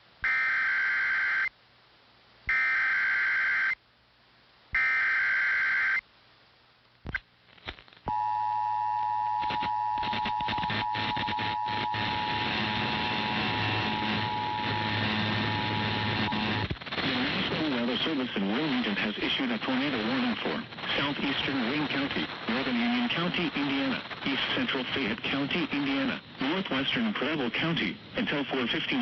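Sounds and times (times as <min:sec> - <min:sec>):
crackling noise: 0:04.7 - 0:08.1, 0:09.0 - 0:29.0
two-tone attention signal: 0:08.1 - 0:12.4, 0:13.2 - 0:16.6
screeching digital data tones: 0:09.2 - 0:16.6.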